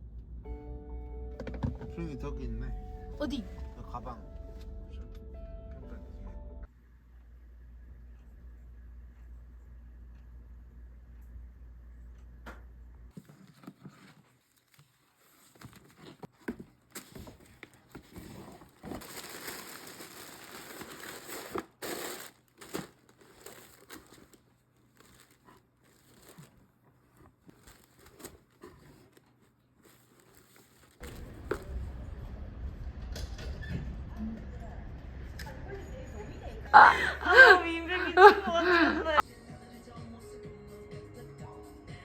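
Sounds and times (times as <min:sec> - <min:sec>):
packaging crinkling and rustling: 0:13.2 - 0:31.8.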